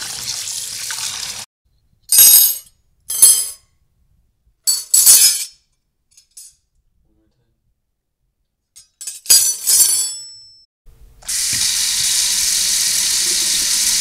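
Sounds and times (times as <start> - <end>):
tap water running into sink: 0.0 - 1.4.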